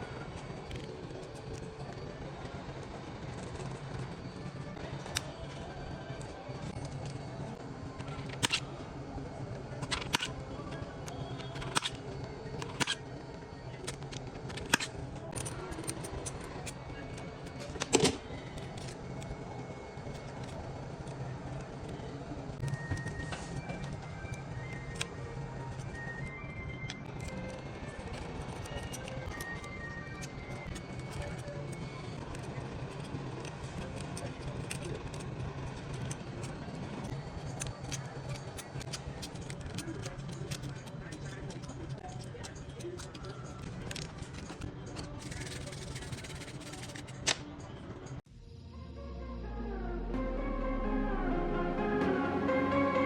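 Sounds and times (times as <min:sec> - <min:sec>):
small repair tools clicking: 0:13.8 - 0:19.0, 0:26.9 - 0:47.4.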